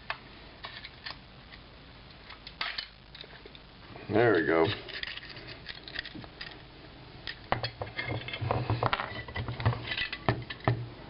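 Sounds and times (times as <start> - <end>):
metal parts clicking and scraping: 0.6 - 1.6, 2.2 - 3.6, 4.4 - 10.7.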